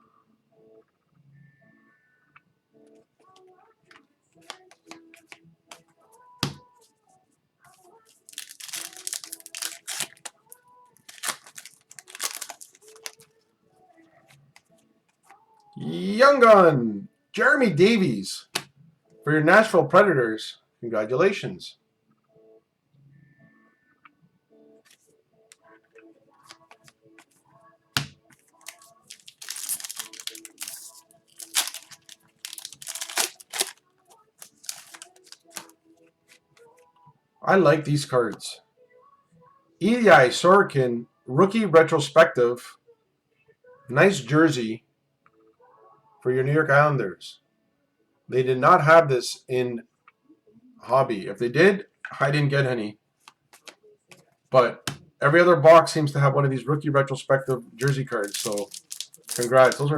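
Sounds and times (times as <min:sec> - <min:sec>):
cards being shuffled: 0:04.4 - 0:05.8, 0:08.3 - 0:10.4, 0:11.0 - 0:13.3, 0:28.0 - 0:33.8, 0:34.4 - 0:35.7, 0:53.3 - 0:54.2, 0:57.5 - 0:59.9
foil packs crinkling and rustling: 0:08.3 - 0:10.4, 0:11.0 - 0:13.3, 0:28.6 - 0:33.8, 0:34.4 - 0:35.7, 0:57.5 - 0:59.9.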